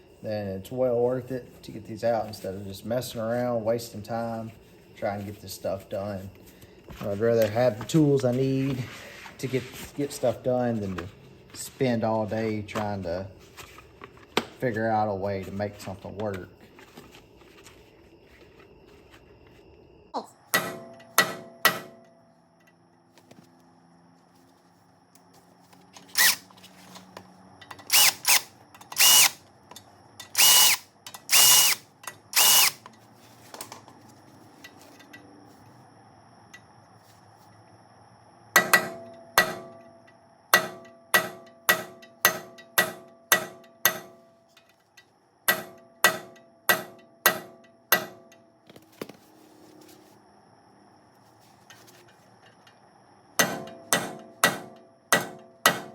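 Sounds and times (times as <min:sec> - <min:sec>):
hammer striking metal punch: 0:20.5 - 0:22.0, 0:38.6 - 0:39.8, 0:40.6 - 0:44.2, 0:45.5 - 0:48.3, 0:53.4 - 0:55.9.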